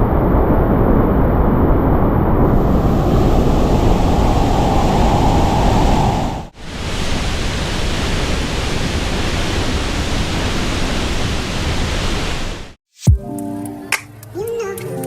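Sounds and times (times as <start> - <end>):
waterfall rushing: 2.4 - 12.8.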